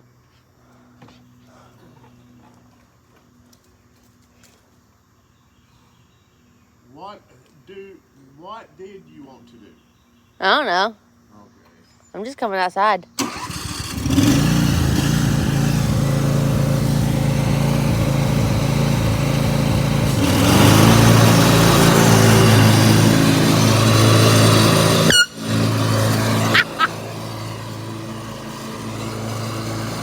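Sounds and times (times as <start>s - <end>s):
lawn mower engine running: 13.2s - 30.0s.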